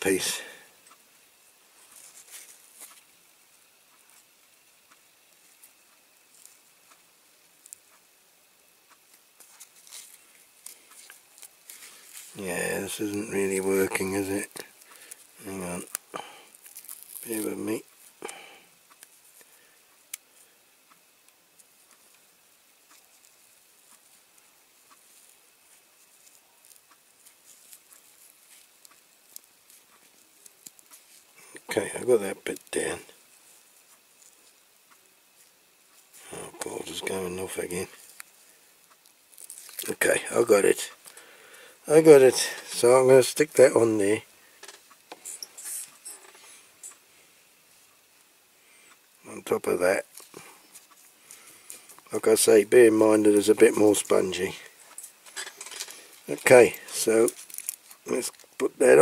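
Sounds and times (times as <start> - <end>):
fingers handling foam and tape: 15.8 - 18.2, 24.9 - 31.3, 39.0 - 39.9, 55.2 - 58.6.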